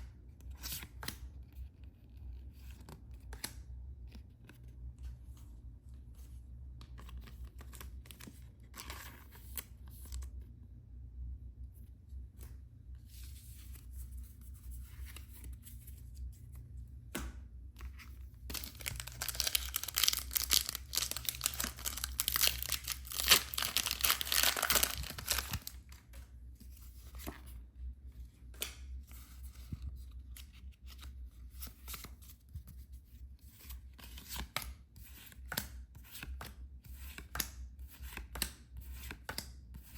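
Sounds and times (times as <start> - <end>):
packaging tearing and crinkling: 18.5 - 25.8.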